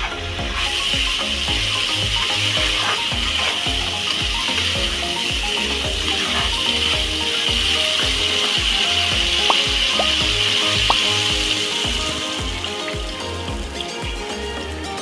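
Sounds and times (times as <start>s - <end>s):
background music with beat: 0.0s - 15.0s
food sizzling in a pan: 0.0s - 15.0s.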